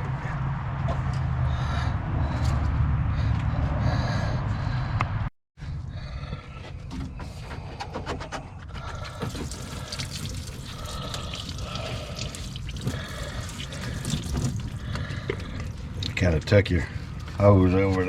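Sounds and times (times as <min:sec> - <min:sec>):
coolant dripping into a bucket: 0:08.9 - 0:17.3.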